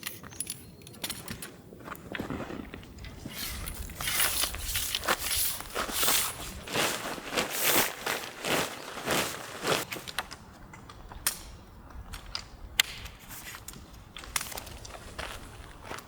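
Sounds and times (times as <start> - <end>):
crunching footsteps: 1.2 - 10.4, 13.4 - 16.0.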